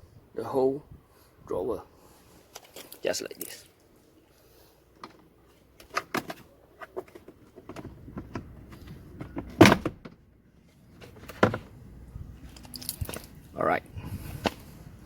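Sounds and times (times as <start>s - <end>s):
plastic glove box clicks and knocks: 7.1s - 10.2s.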